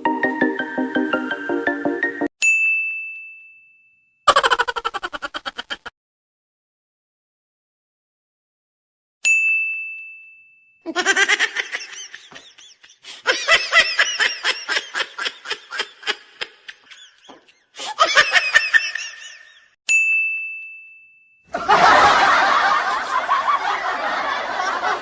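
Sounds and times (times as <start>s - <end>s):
ringing ding: 2.4s - 4.2s, 9.2s - 10.8s, 19.9s - 21.5s
crowd laughing: 4.3s - 5.9s, 10.9s - 19.7s, 21.5s - 25.0s
high-pitched laughter: 4.3s - 5.9s, 10.9s - 19.7s, 21.5s - 25.0s.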